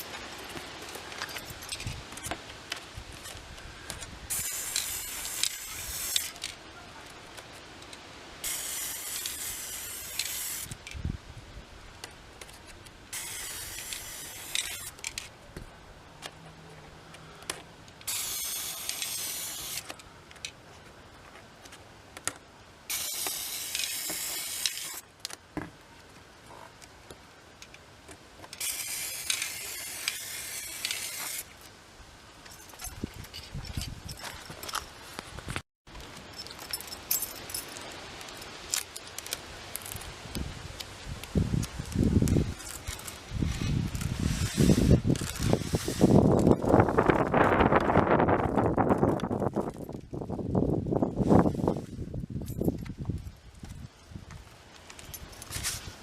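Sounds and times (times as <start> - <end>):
spray can hissing: 4.3 - 6.5, 8.4 - 10.8, 13.1 - 15.0, 18.0 - 19.8, 22.9 - 25.0, 28.6 - 31.5, 44.0 - 46.3
spray can clicks: 22.9 - 25.0.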